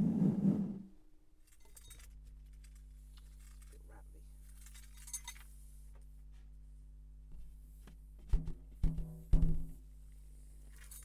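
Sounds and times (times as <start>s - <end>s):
low electrical hum: 0.0s - 11.0s
faint small clicks and clinks: 1.4s - 5.6s, 10.6s - 11.0s.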